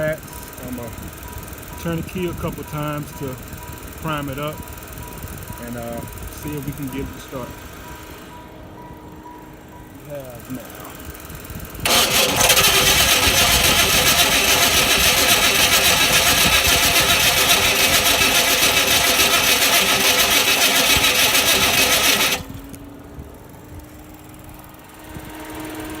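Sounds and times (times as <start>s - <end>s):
car engine cranking on starter: 0.0s - 8.2s, 11.6s - 22.7s.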